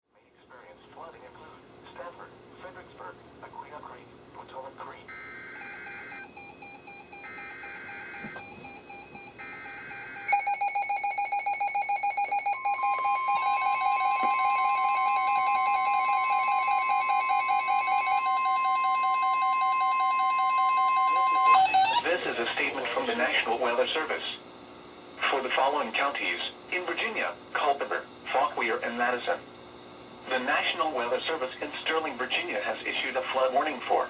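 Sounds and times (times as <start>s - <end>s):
long steady alarm tone: 5.1s - 32.2s
pulsing electronic beeps: 20.0s - 22.1s
shrill digital data bursts: 20.9s - 22.1s.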